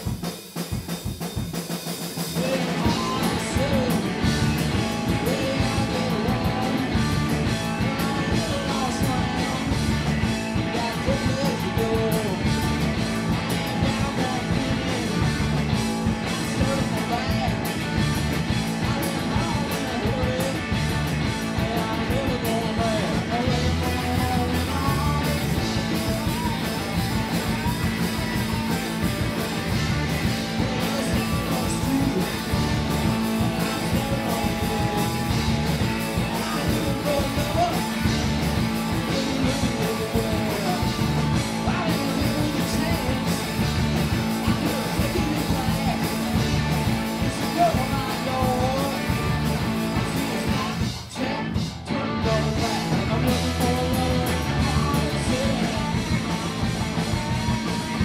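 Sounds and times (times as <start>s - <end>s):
electric guitar: 0.0s - 58.0s
live rock band playing: 0.0s - 58.0s
person singing: 2.3s - 18.0s, 18.8s - 58.0s.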